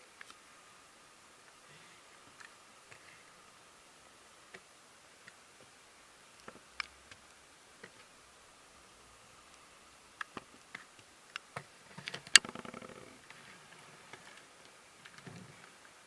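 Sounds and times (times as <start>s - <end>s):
quiet hiss: 0.0s - 16.0s.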